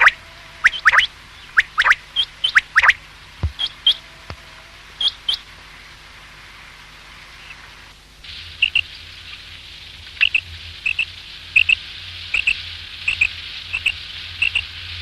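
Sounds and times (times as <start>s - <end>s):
quail calling: 0.0s - 5.5s, 12.4s - 14.6s
faint low hum: 0.0s - 15.0s.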